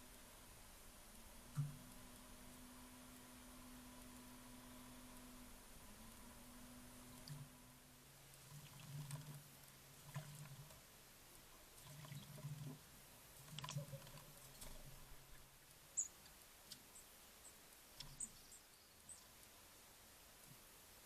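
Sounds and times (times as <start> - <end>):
faint low hum: 0.0 - 21.0
soft clicks and patters: 3.9 - 19.7
small birds chirping: 11.4 - 19.8.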